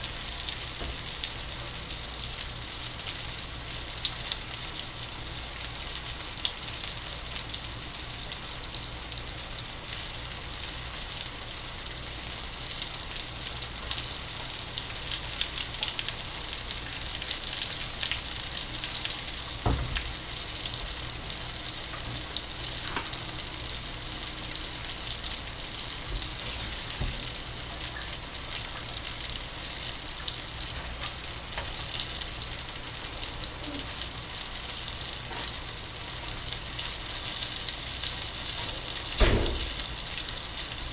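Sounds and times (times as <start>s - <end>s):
food deep-frying in hot oil: 0.0s - 40.9s
knock: 19.6s - 20.0s, 39.2s - 39.7s.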